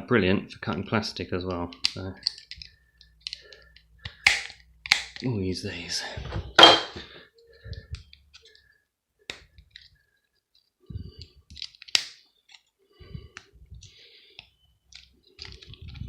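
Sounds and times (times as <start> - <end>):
metal cutters snipping plastic: 4.1 - 5.3.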